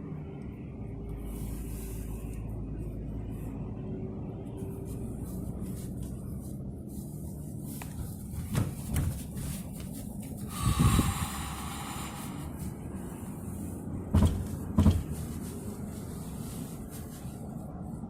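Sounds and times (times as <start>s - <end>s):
car engine rumbling: 0.0s - 18.0s
thuds: 8.4s - 9.4s, 14.1s - 15.2s.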